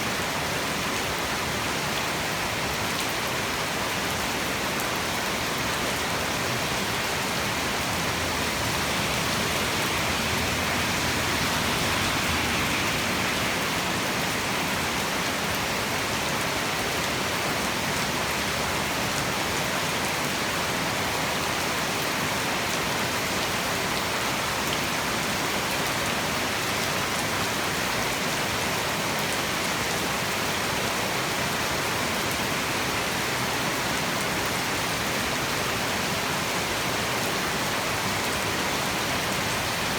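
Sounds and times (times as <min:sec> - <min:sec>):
heavy rain hissing: 0:06.2 - 0:16.8.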